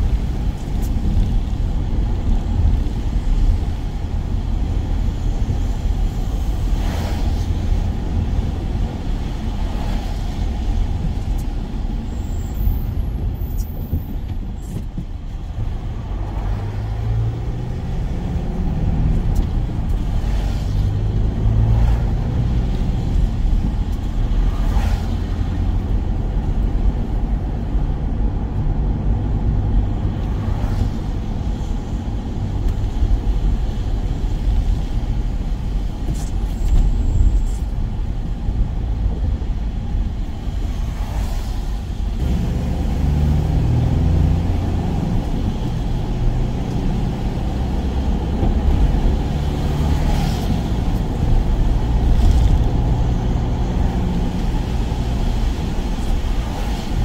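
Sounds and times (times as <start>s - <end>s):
van engine and road noise: 0.0s - 57.0s.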